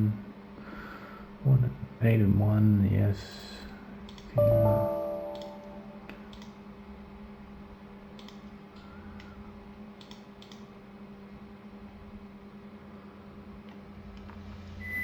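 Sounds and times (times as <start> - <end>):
steady low hum: 0.0 - 15.0
keyboard and mouse clicks: 4.1 - 4.4, 5.3 - 6.6, 8.2 - 8.5, 10.0 - 10.7.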